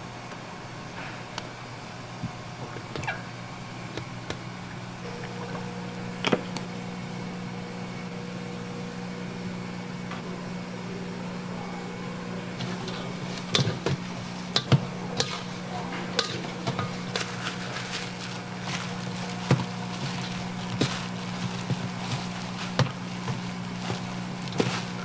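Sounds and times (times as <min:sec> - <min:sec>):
steady low hum: 0:00.0 - 0:25.0
utensils and cookware clattering: 0:12.6 - 0:25.0.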